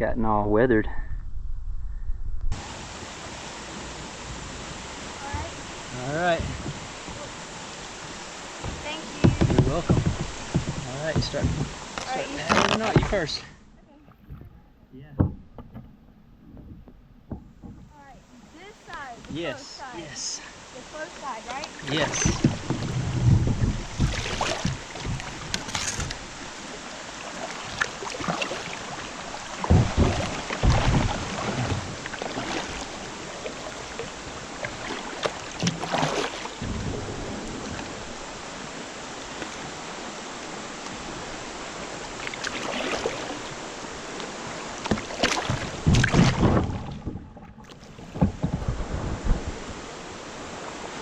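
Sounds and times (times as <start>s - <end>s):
wind on microphone: 0.0s - 13.2s, 16.4s - 51.0s
paddle strokes in water: 2.6s - 13.4s, 15.2s - 51.0s
running water: 2.6s - 15.4s, 17.3s - 51.0s.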